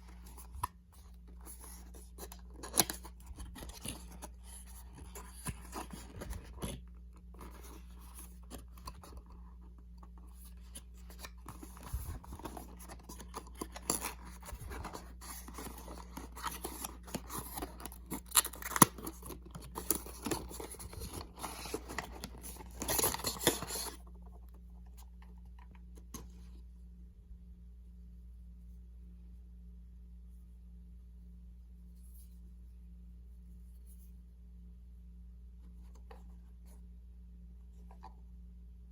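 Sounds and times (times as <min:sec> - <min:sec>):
cardboard packaging clicks and crinkling: 0:00.1 - 0:24.1.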